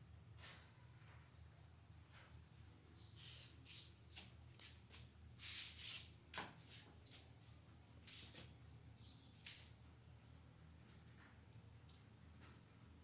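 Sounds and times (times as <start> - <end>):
faint bird chirp: 2.0 - 3.5, 8.2 - 9.8, 11.8 - 12.2.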